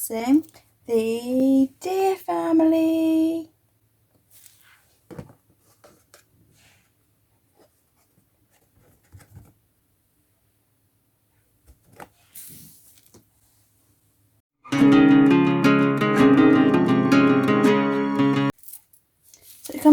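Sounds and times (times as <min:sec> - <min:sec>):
acoustic guitar music: 0:14.6 - 0:18.5.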